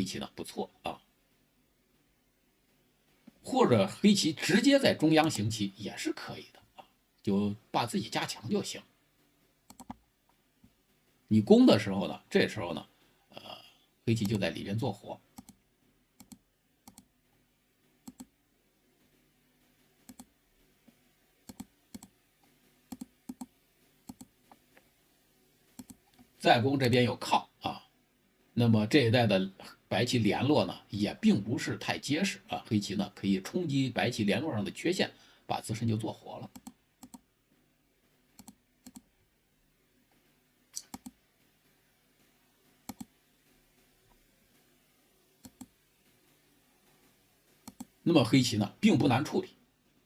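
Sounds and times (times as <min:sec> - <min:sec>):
computer mouse clicks: 0:09.7 - 0:10.4, 0:15.3 - 0:15.6, 0:16.2 - 0:17.1, 0:18.0 - 0:18.4, 0:20.0 - 0:20.3, 0:21.4 - 0:24.9, 0:25.7 - 0:26.3, 0:36.5 - 0:37.3, 0:38.3 - 0:39.1, 0:40.7 - 0:41.2, 0:42.6 - 0:43.2, 0:45.4 - 0:45.8, 0:47.5 - 0:48.0.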